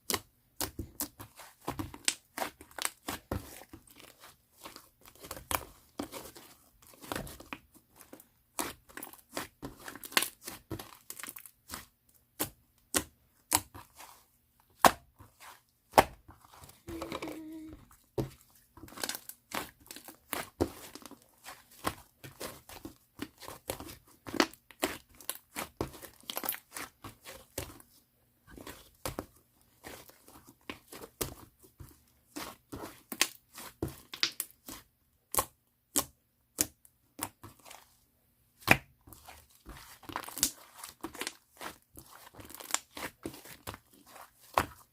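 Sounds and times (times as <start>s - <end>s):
slime popping and crackling: 32.9s - 37.5s, 38.6s - 44.7s
slime squished by hand: 38.6s - 44.9s.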